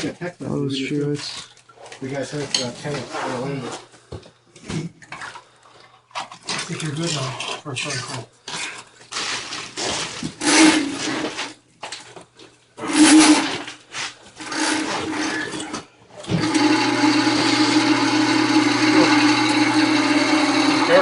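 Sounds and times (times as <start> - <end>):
electric drain snake running: 10.4 - 11.4, 12.8 - 13.8, 14.4 - 21.0.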